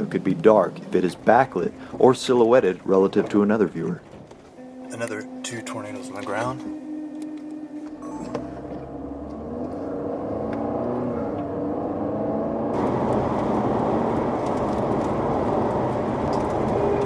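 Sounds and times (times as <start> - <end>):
car engine accelerating: 6.2 - 17.0
wind and road noise: 8.0 - 17.0.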